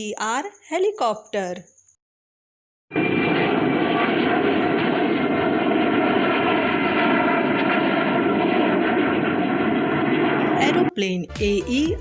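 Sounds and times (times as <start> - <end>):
aircraft engine drone: 2.9 - 10.9.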